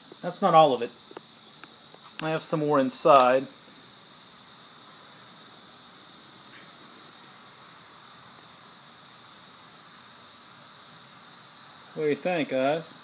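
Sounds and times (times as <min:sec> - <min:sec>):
steady high-pitched hiss: 0:00.0 - 0:13.0.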